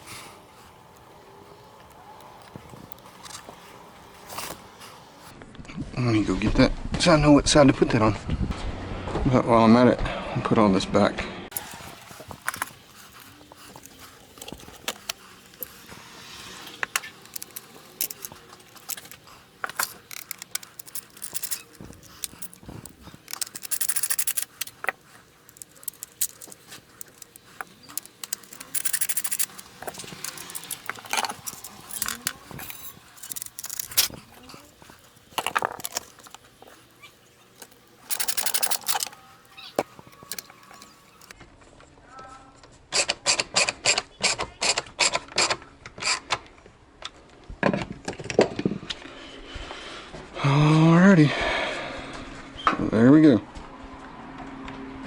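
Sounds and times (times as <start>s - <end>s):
scraping and rustling: 11.5s - 41.3s
tool clicks and knocks: 16.8s - 34.2s.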